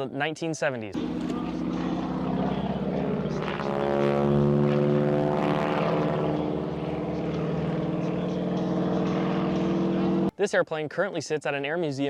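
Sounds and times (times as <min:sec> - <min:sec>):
propeller aircraft engine drone: 0:01.0 - 0:10.3.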